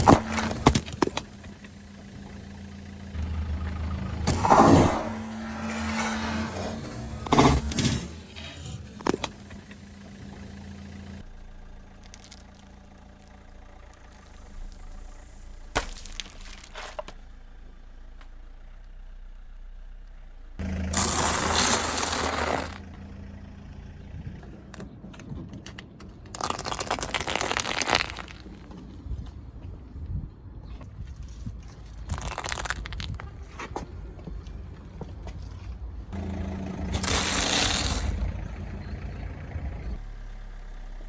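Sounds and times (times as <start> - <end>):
sharp crack: 0.0 - 2.5, 15.7 - 17.2, 20.6 - 23.1, 26.3 - 28.7, 36.2 - 38.9
car crushing objects: 0.0 - 11.2, 15.6 - 17.4, 20.6 - 29.3, 31.9 - 34.4, 36.2 - 40.0
car engine idling: 0.0 - 41.0.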